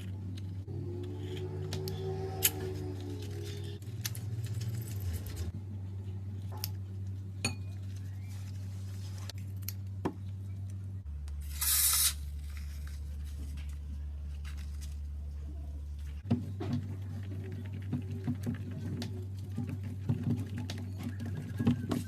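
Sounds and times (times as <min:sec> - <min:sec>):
low steady hum: 0:00.0 - 0:22.0
hiss-like squirt: 0:11.5 - 0:12.2.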